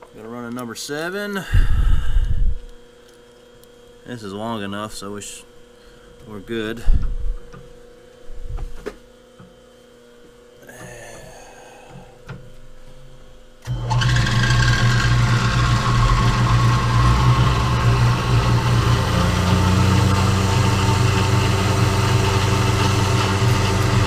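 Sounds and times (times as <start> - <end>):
milling machine motor humming: 13.6 - 24.0.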